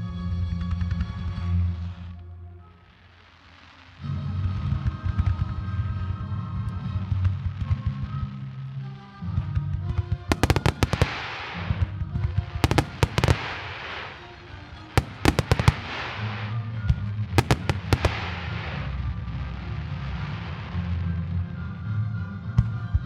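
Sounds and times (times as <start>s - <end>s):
music: 0.0s - 23.0s
fireworks shells bursting: 10.3s - 11.6s, 12.6s - 14.3s, 15.0s - 16.5s, 17.4s - 18.8s
crackling hiss: 10.3s - 11.7s, 12.6s - 16.6s, 17.4s - 20.8s.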